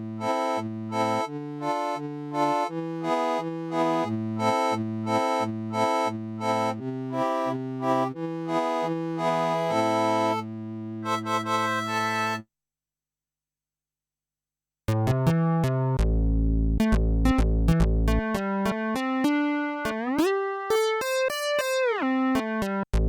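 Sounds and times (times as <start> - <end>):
synthesizer chords and bass line: 0.0 - 12.4.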